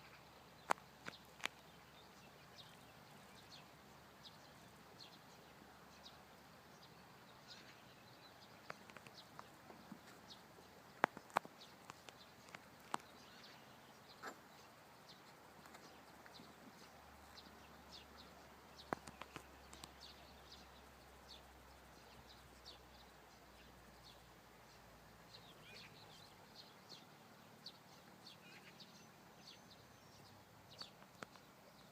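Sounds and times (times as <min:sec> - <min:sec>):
small birds chirping: 0:00.0 - 0:31.9
sharp clicks: 0:08.6 - 0:09.5.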